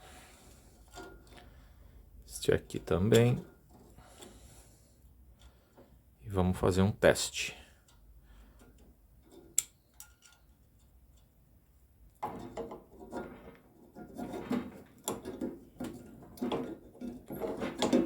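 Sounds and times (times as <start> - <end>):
hard objects clattering and knocking: 12.2 - 18.0.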